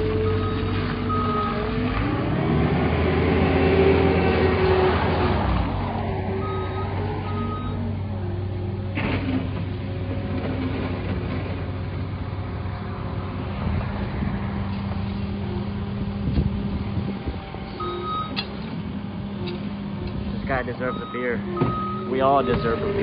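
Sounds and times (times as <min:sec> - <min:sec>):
reversing alarm beeps: 0:00.2 - 0:01.6, 0:06.4 - 0:07.8, 0:17.8 - 0:18.4, 0:20.8 - 0:23.0.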